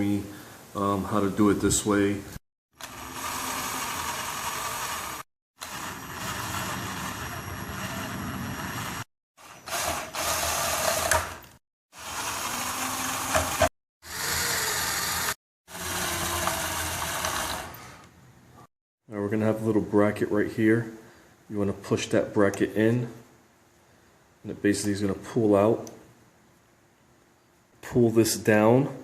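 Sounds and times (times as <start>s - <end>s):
socket driver whirring: 2.8s - 18.1s.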